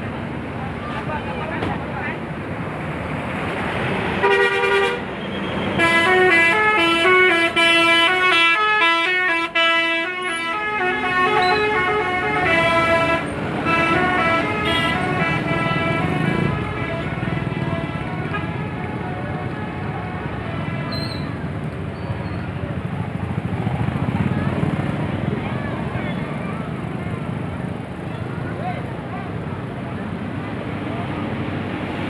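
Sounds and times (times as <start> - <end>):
road noise: 0.0 - 32.0
multi-tone bus horn tune: 4.2 - 21.4.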